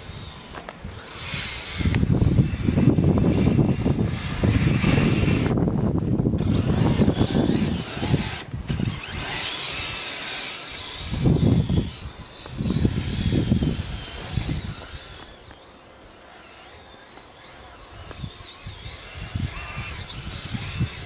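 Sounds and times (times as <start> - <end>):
electric motors whining: 0.0 - 21.0.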